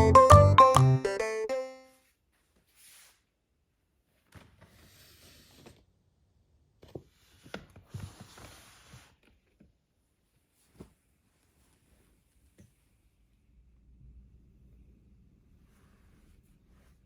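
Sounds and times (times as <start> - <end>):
music track last note: 0.0 - 1.9.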